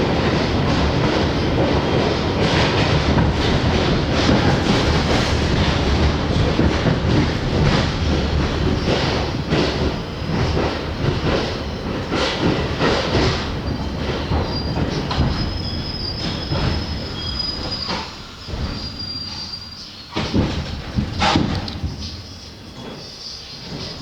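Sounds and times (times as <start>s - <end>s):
subway wheels clacking over rail joints: 0.0s - 24.0s
train rumble: 0.0s - 24.0s
high wheel squeal: 13.7s - 20.2s.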